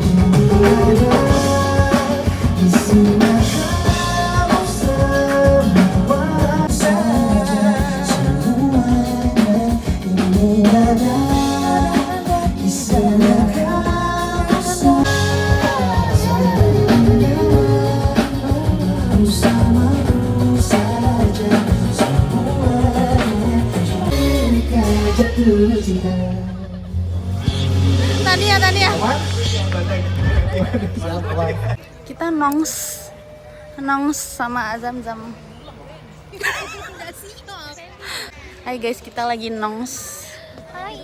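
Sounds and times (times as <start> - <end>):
pop-rock song with vocals: 0.0 - 31.0.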